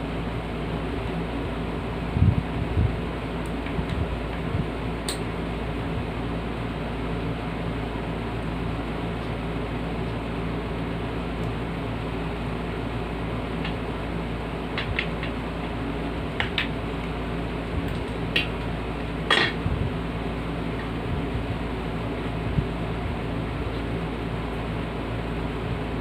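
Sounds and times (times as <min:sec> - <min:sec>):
electric fan humming: 0:00.0 - 0:26.0.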